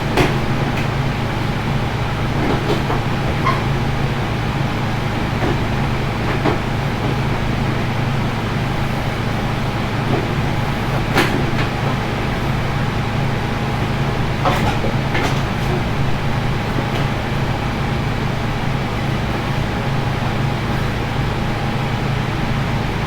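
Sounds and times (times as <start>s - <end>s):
steady mechanical hum: 0.0s - 23.0s.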